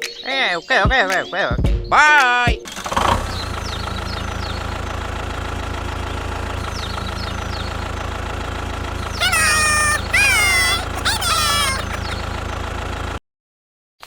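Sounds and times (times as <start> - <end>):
high-pitched squeaky calls: 9.2 - 12.2.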